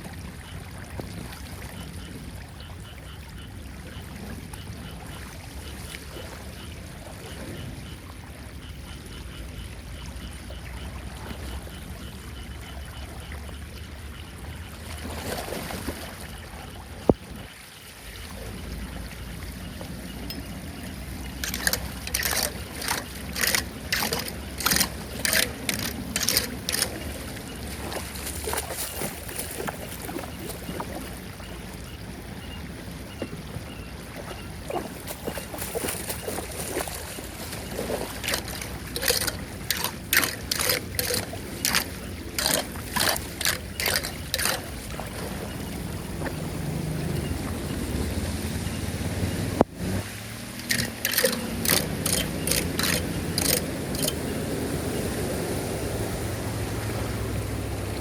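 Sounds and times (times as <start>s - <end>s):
run of sharp noises: 34.8s - 56.4s.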